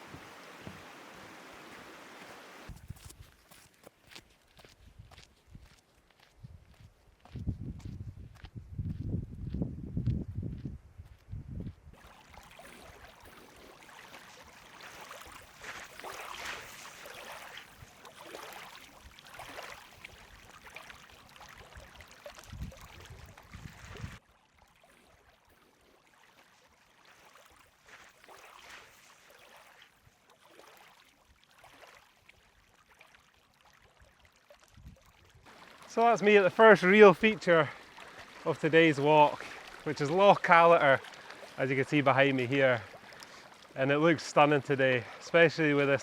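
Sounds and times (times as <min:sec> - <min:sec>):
faint outdoor rushing noise: 0:00.0 - 0:02.8.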